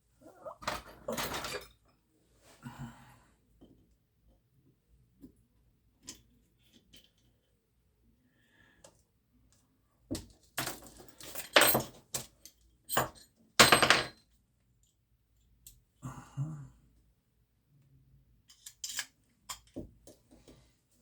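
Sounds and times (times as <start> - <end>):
metal parts and tools clinking: 0.6 - 1.9, 10.6 - 14.2, 18.5 - 19.8.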